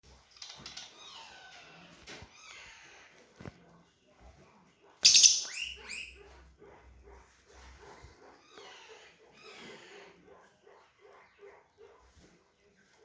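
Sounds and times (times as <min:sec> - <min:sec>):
bird chattering calls: 0:05.0 - 0:06.1.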